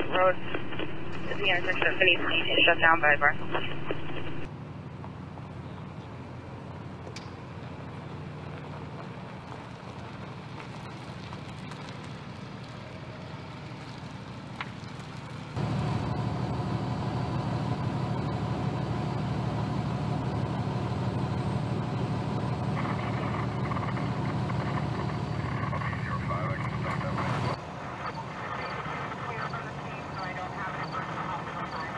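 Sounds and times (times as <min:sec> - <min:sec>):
vehicle engine idling: 0:03.8 - 0:31.9.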